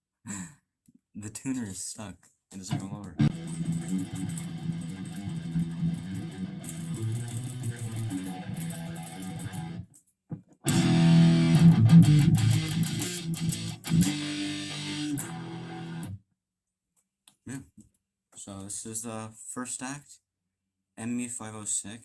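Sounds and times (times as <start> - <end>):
electric guitar riffs and chords: 2.7 - 9.8, 10.7 - 16.2.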